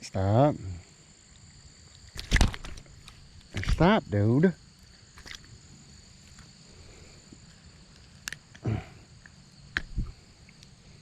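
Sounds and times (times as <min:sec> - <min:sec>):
dull thump: 0:02.2 - 0:02.9, 0:03.5 - 0:04.0.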